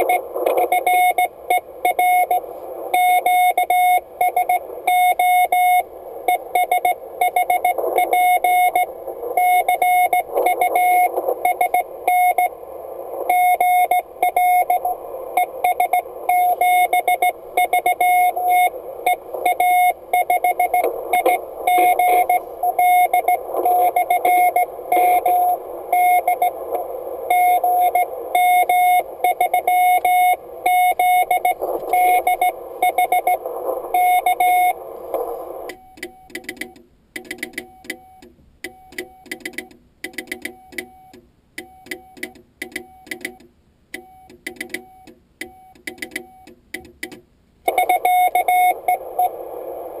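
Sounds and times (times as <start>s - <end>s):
radio band hiss: 0.0s - 35.7s, 47.7s - 50.0s
morse code tone: 0.0s - 36.8s, 47.7s - 50.0s
clicks on morse elements: 15.7s - 34.5s.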